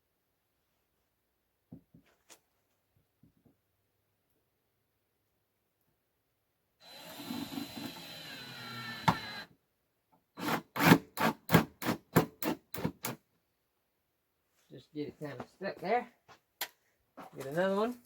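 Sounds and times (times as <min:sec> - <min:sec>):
cordless drill whine: 0:06.8 - 0:09.5.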